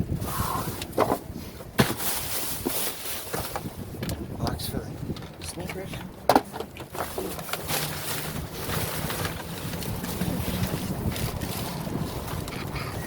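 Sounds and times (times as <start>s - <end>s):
wind noise on microphone: 0.0s - 13.0s
packages rustling: 6.6s - 12.7s.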